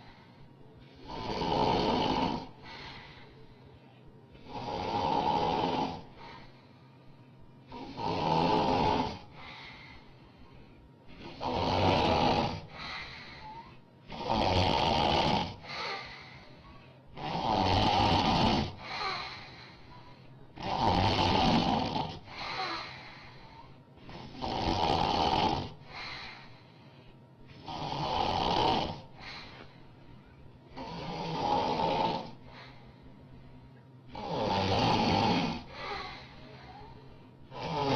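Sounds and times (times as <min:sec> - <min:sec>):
soft breaths: 0:00.0 - 0:37.9
woman snoring loudly: 0:00.9 - 0:03.2, 0:04.4 - 0:06.5, 0:07.7 - 0:10.0, 0:11.1 - 0:16.5, 0:17.1 - 0:20.0, 0:20.6 - 0:26.5, 0:27.6 - 0:29.7, 0:30.7 - 0:32.8, 0:34.1 - 0:37.9.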